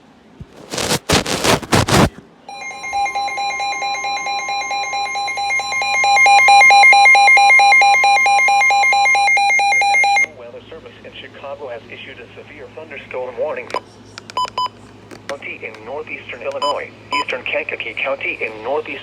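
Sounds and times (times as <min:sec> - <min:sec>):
harsh bursts of data noise: 0:00.5 - 0:03.3
multi-tone alarm pulsing: 0:02.5 - 0:10.3.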